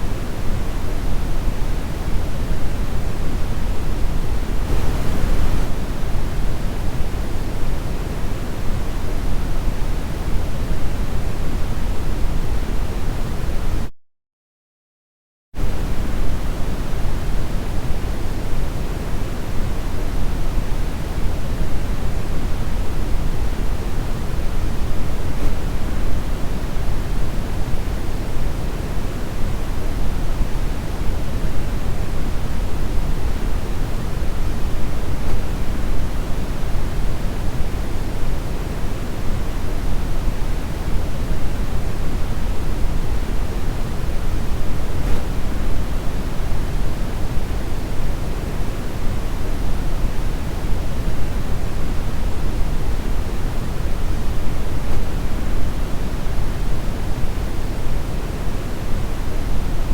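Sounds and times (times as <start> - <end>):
brown noise: 4.4 - 6.4.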